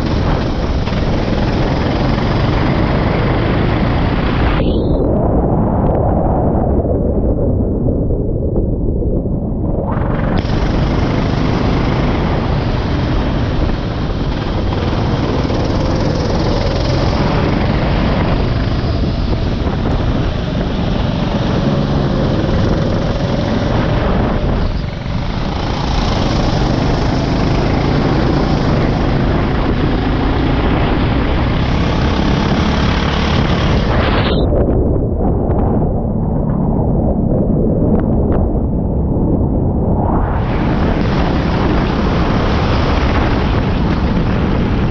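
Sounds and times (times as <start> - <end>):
go-kart engine running: 0.0 - 4.6, 10.2 - 34.2, 40.6 - 44.9
wind on microphone: 0.0 - 44.9.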